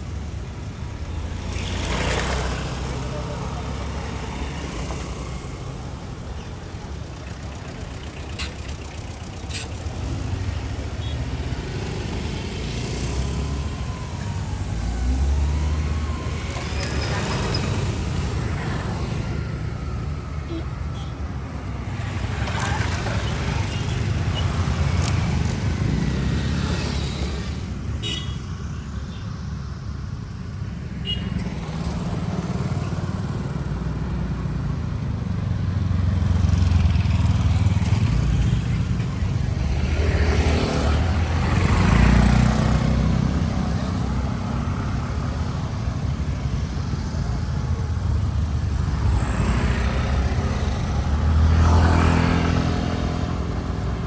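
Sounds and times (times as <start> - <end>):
passing traffic: 0.0 - 54.0
road noise: 0.0 - 54.0.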